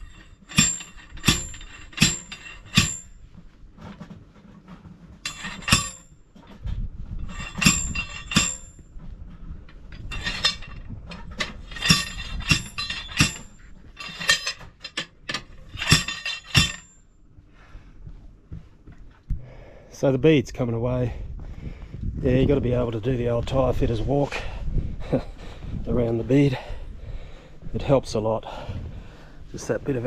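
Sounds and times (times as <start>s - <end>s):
metal tool striking metal rim: 0.0s - 3.2s, 5.2s - 6.1s, 7.2s - 8.8s, 10.0s - 17.0s.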